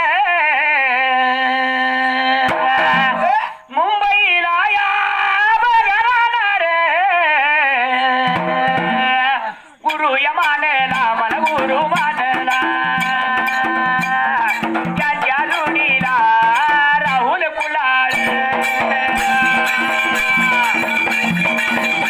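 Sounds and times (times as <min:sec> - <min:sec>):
steady drum beat: 0:02.5 - 0:03.4, 0:08.3 - 0:09.3, 0:09.9 - 0:22.0.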